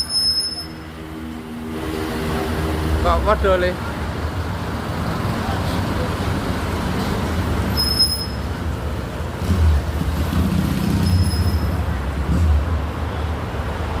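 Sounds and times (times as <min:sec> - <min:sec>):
high-pitched squeaks: 0:00.0 - 0:00.9
bus engine rumble: 0:00.0 - 0:14.0.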